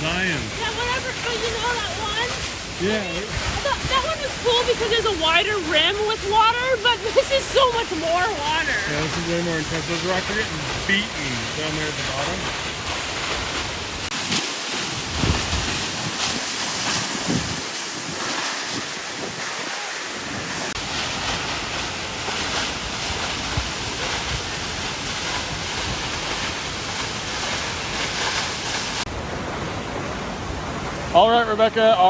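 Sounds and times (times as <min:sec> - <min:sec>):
waterfall crashing onto rocks: 0:00.0 - 0:32.0
wind buffeting microphone: 0:03.2 - 0:10.9, 0:14.9 - 0:21.2.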